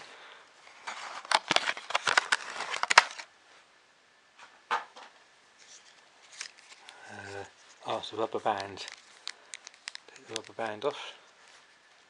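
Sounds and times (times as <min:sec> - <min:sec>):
plastic packaging crinkling: 0:00.6 - 0:03.3, 0:05.6 - 0:11.9.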